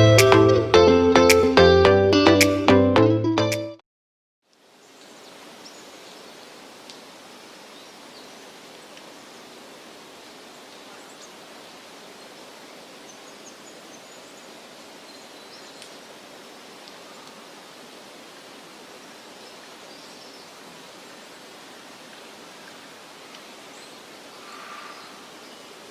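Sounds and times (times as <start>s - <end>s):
intro music: 0.0s - 3.8s
outdoor background hiss: 4.4s - 25.9s.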